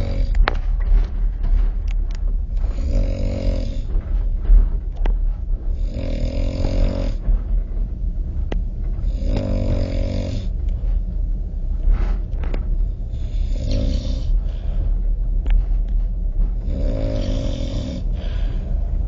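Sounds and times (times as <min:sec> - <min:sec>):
man snoring: 0:00.0 - 0:00.4, 0:02.6 - 0:03.9, 0:05.7 - 0:07.2, 0:09.1 - 0:10.6, 0:13.1 - 0:14.5, 0:16.6 - 0:18.7
train rumbling: 0:00.0 - 0:19.0.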